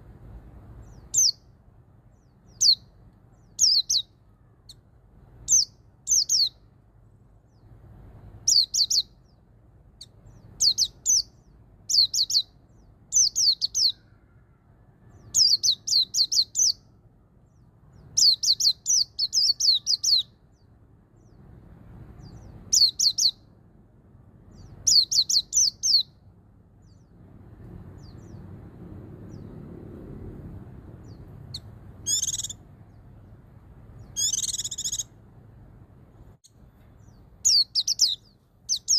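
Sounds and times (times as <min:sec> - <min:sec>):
bird singing high sliding notes: 0:31.0 - 0:32.6.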